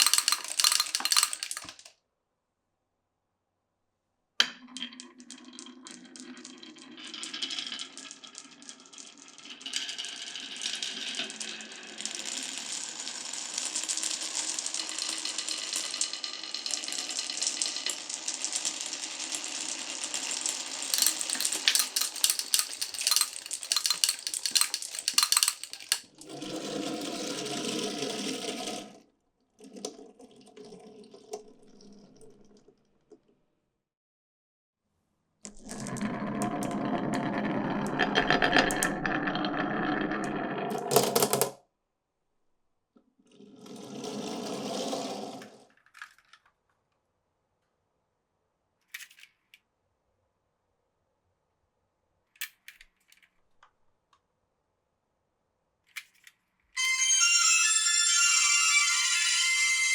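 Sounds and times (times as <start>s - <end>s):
marbles rolling and clattering: 0.0s - 1.9s, 4.6s - 28.6s, 35.5s - 41.6s, 56.8s - 59.9s.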